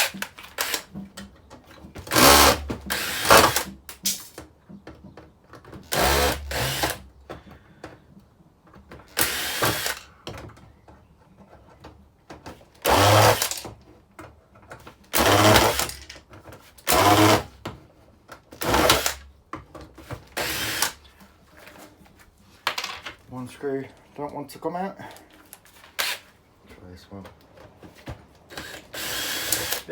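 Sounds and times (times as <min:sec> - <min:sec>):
cordless drill motor bursts: 0:00.0 - 0:00.9, 0:02.0 - 0:03.8, 0:05.9 - 0:07.0, 0:09.1 - 0:10.1, 0:12.8 - 0:13.6, 0:15.1 - 0:16.0, 0:16.9 - 0:17.6, 0:18.6 - 0:19.2, 0:20.4 - 0:21.0, 0:28.5 - 0:29.9.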